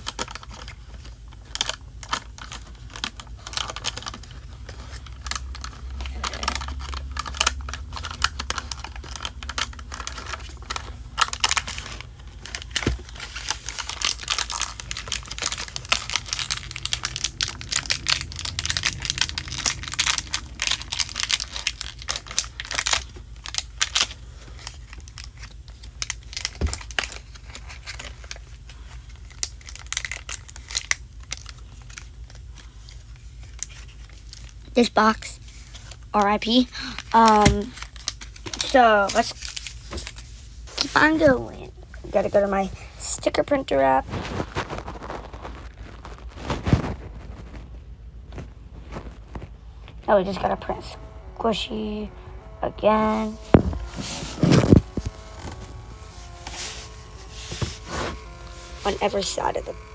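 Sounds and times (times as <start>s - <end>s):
crinkling: 0.0s - 59.9s.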